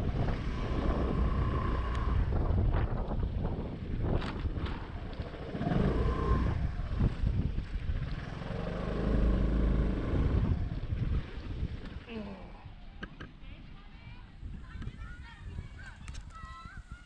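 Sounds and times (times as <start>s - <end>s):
car engine drone: 0.0s - 3.0s, 4.8s - 11.0s
road noise: 0.0s - 11.6s.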